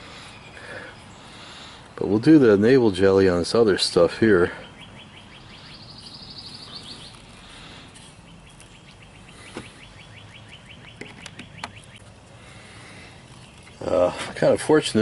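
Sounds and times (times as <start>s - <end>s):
bird trilling: 4.3s - 13.8s.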